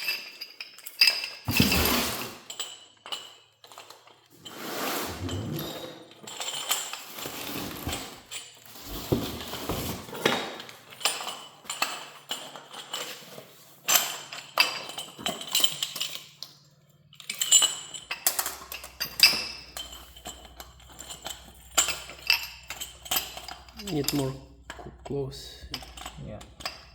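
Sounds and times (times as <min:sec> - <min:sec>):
tools and parts clinking: 0:00.0 - 0:26.9
short scrapes: 0:04.4 - 0:06.1.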